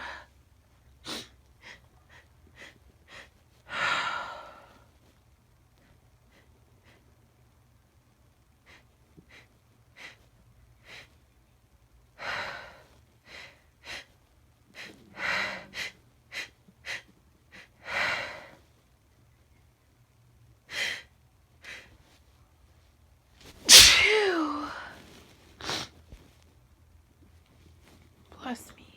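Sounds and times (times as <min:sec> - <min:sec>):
woman gasping before sneeze: 0:23.7 - 0:24.8
woman sniffing: 0:23.7 - 0:24.8
woman sneezing: 0:23.7 - 0:24.9.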